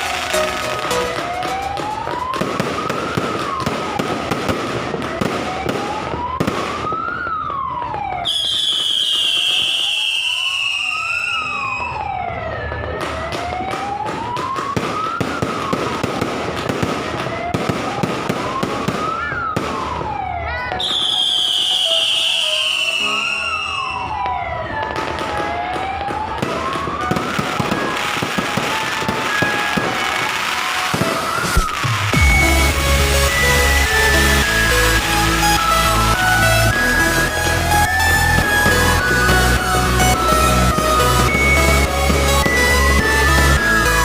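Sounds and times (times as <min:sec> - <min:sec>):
fireworks crackling and popping: 0:00.0 - 0:44.0
siren-like wail: 0:00.0 - 0:44.0
high falling whistle: 0:08.2 - 0:12.0, 0:20.8 - 0:24.2, 0:31.1 - 0:34.9.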